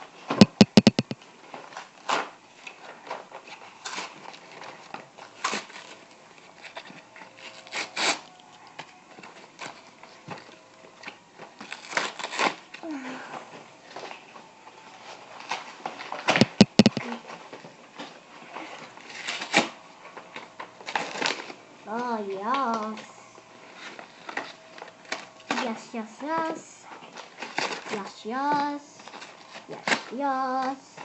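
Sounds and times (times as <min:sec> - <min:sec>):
sharp clicks and snaps: 0:00.4 - 0:01.2, 0:16.4 - 0:17.1
packaging rustling and tearing: 0:01.4 - 0:12.8, 0:14.9 - 0:21.6, 0:27.1 - 0:28.0, 0:28.7 - 0:31.0.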